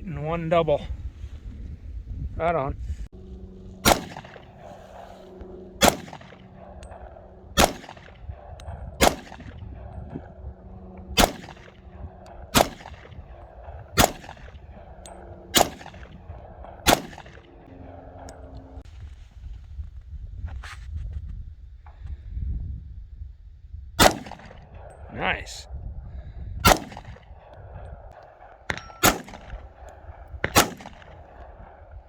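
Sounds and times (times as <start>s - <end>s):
pistol shots: 3.8s - 5.1s, 5.8s - 9.9s, 11.2s - 17.6s, 24.0s - 24.9s, 26.6s - 27.2s, 28.3s - 31.8s.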